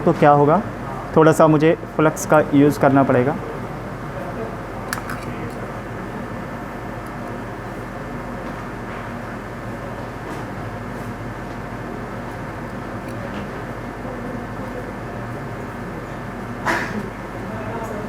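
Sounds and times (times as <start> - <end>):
low electrical hum with fan noise: 0.0 - 18.0.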